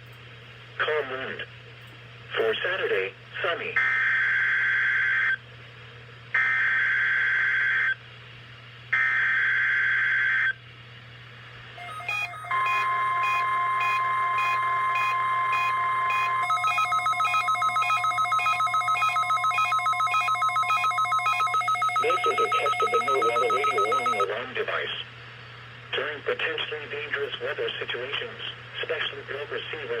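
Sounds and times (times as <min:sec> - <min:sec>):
rapid electronic beeping: 0:11.8 - 0:24.3
screeching digital bursts: 0:11.8 - 0:24.3
steady alarm tone: 0:11.8 - 0:24.3.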